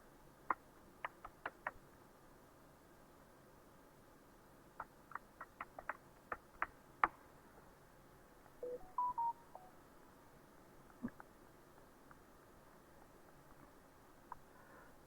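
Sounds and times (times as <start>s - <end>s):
computer alert chime: 8.6s - 9.7s.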